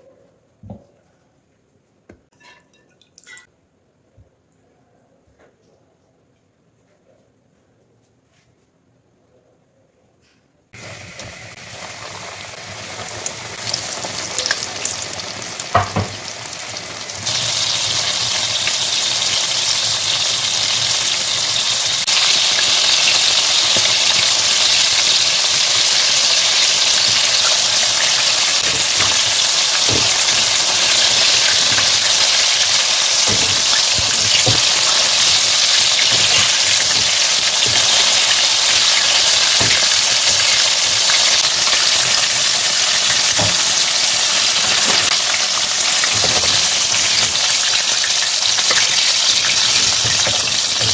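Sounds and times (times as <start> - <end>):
food sizzling in hot oil: 10.8 - 50.9.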